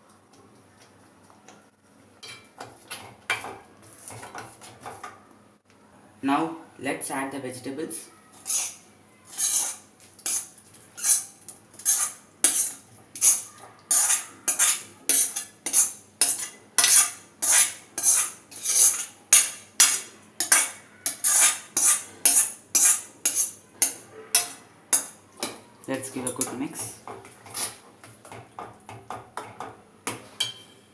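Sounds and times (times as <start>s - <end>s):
spoon scraping a pan: 8.4s - 25.6s, 26.3s - 28.4s.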